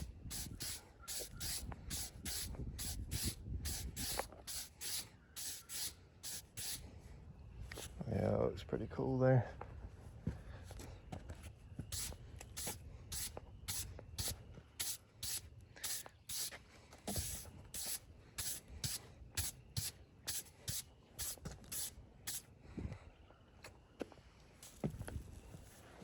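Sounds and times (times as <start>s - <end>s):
rhythmic brushing strokes: 0.0s - 6.8s.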